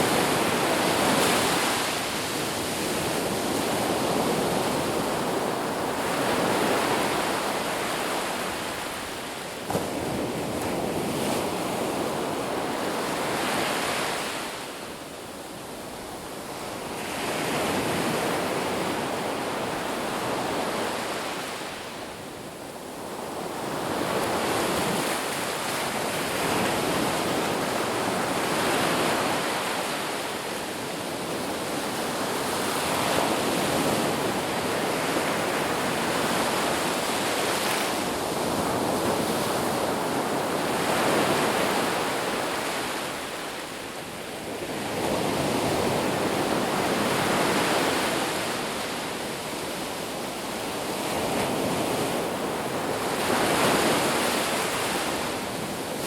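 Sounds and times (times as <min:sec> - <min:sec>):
sea waves breaking in surf: 0:00.0 - 0:14.9, 0:22.8 - 0:56.0.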